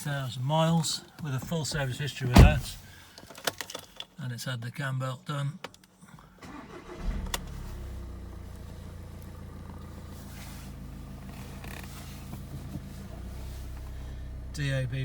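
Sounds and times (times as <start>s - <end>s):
diesel engine idling: 6.4s - 15.0s.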